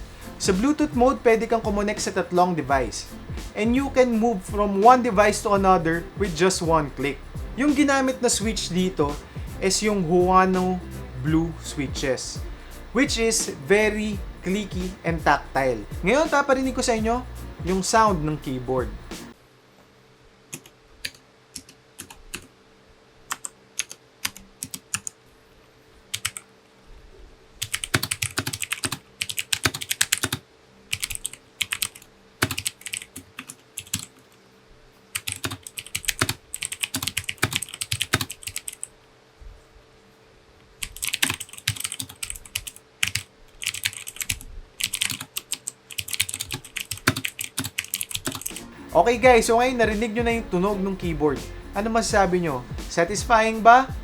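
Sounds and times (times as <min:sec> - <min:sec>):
clicky mechanical keyboard typing: 0:26.2 - 0:26.4, 0:27.6 - 0:34.2, 0:35.2 - 0:38.9, 0:40.8 - 0:48.6.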